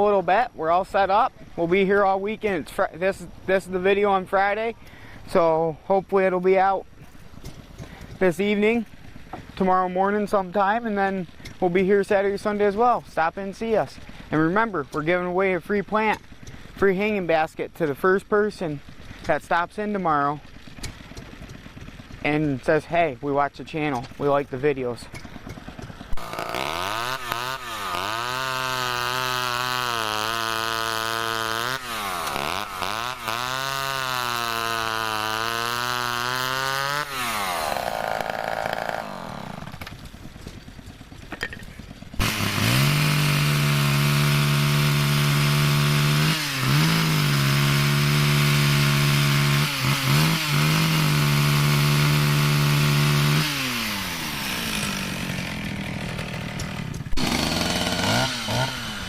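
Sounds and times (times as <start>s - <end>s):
chainsaw revving: 24.1s - 59.0s.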